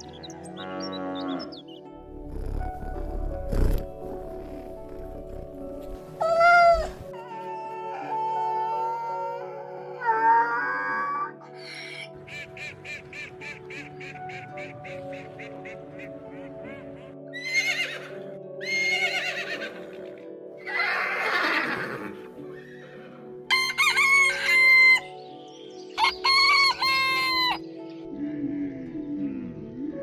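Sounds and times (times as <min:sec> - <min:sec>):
background music: 0:00.0 - 0:30.0
rooster crowing: 0:23.5 - 0:25.0.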